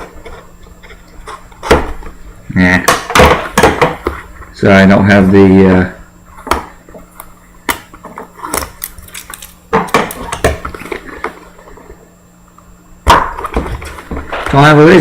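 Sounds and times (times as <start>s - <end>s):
plastic shrink wrap crinkling: 8.4s - 10.9s.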